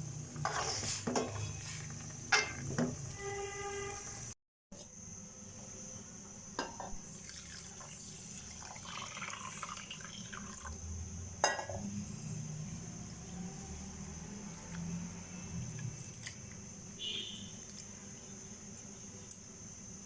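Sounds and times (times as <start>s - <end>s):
water running in a sink: 7.0s - 10.8s.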